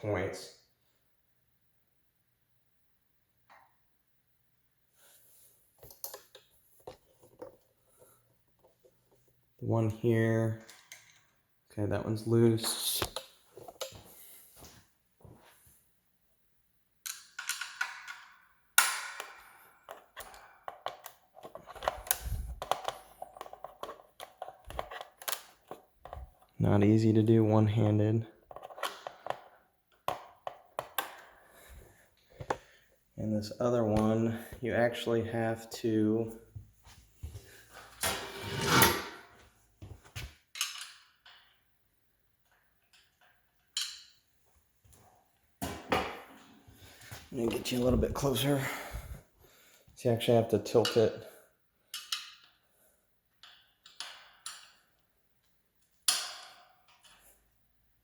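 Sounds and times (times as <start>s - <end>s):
tools scraping and rattling on hardware: 38.0s - 39.3s.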